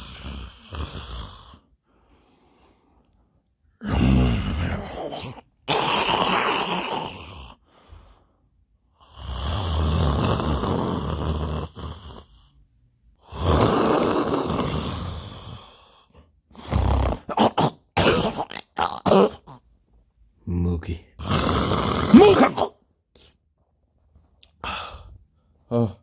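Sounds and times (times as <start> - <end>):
person snoring loudly: 0.0 - 1.6, 3.8 - 7.6, 9.0 - 12.3, 13.2 - 15.7, 16.6 - 17.6, 21.2 - 22.7.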